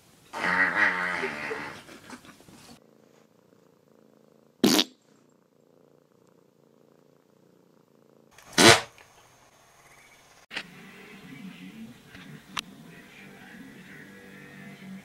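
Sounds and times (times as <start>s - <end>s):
cat purring: 0.4s - 8.5s
sharp bursts of noise: 8.4s - 9.0s.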